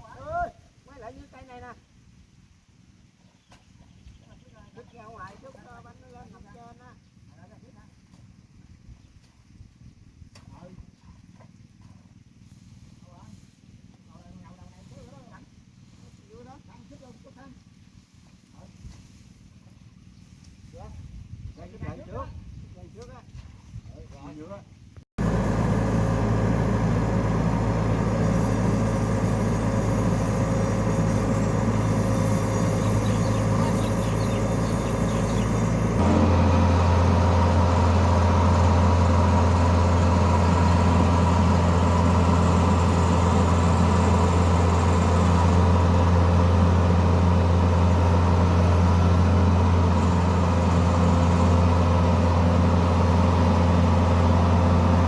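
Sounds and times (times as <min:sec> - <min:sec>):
heavy machine engine drone: 0:25.2 - 0:55.0.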